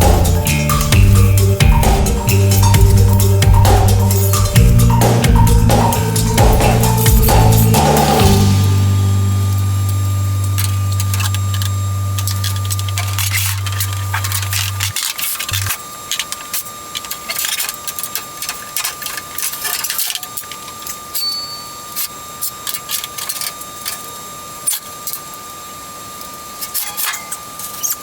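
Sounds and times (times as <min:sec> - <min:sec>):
high-pitched whine: 0:00.0 - 0:16.0.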